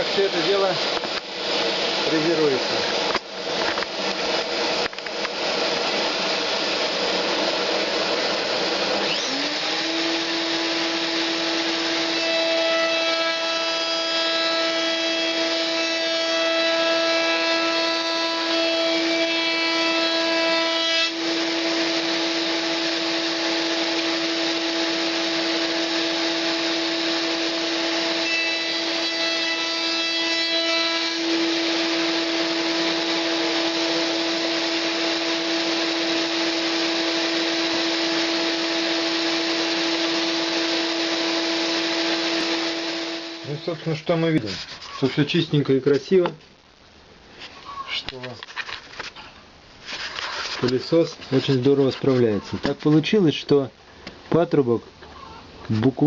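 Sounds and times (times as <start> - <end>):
vacuum running: 0.0 - 17.4, 21.1 - 29.0, 30.9 - 44.1
cutter milling wood: 0.0 - 44.1.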